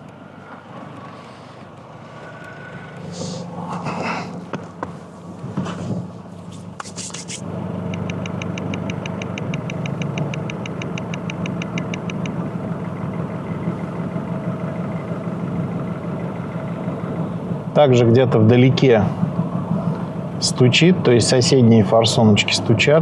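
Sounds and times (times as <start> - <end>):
diesel engine idling: 0.0 - 5.2, 7.4 - 23.0
fast even injector ticking: 7.9 - 12.4
sensor handling clicks: 7.9 - 12.4.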